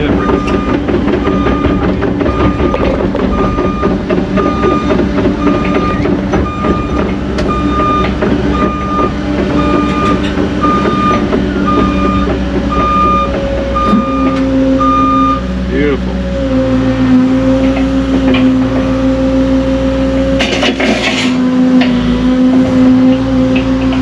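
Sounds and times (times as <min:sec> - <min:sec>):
diesel engine running: 0:00.0 - 0:24.0
excavator travel alarm beeping: 0:00.1 - 0:15.5.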